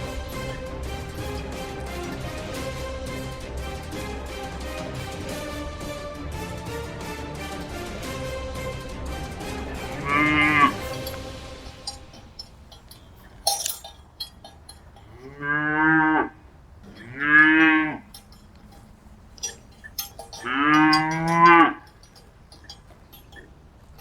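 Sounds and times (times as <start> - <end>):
light clicks and clinks: 0.0 - 2.9, 9.4 - 15.8, 16.4 - 24.0
cattle mooing: 0.0 - 4.8, 9.2 - 24.0.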